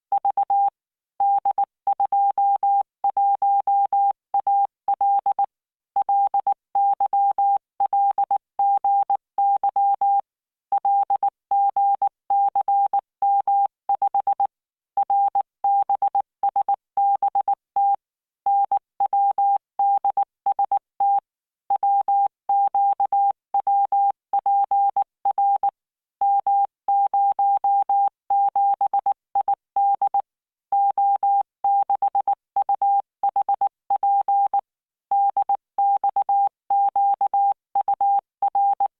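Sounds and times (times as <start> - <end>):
morse code beeps: 35.2 - 38.9.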